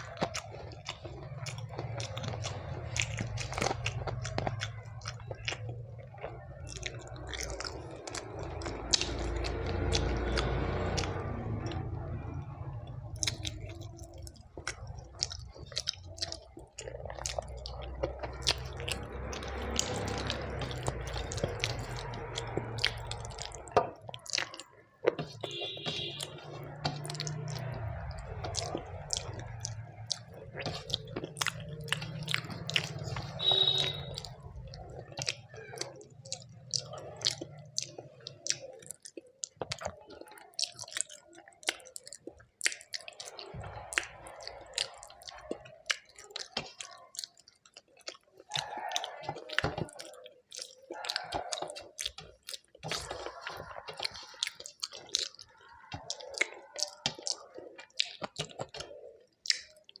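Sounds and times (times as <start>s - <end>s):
mouth clicks: 0.0s - 60.0s
wet chewing and lip smacking: 0.0s - 60.0s.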